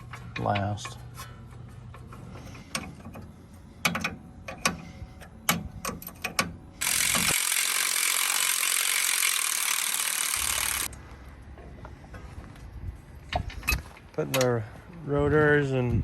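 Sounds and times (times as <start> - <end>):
hand tools clanking on steel: 0.0 - 6.5.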